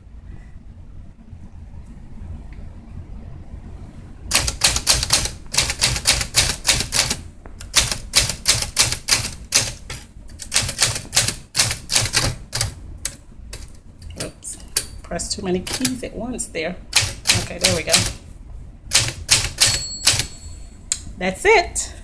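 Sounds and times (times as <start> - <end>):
manual typewriter keys clacking: 4.3 - 15.0, 15.6 - 16.0, 16.9 - 18.2, 18.9 - 20.4.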